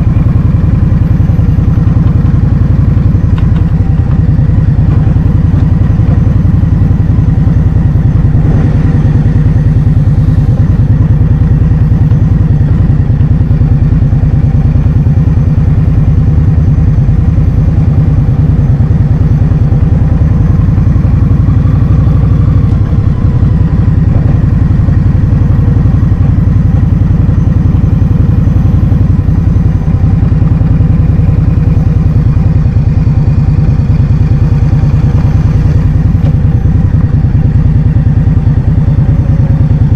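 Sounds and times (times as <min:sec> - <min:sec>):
faint scooter engine hum: 0:00.0 - 0:39.9
wind buffeting microphone: 0:08.2 - 0:09.6.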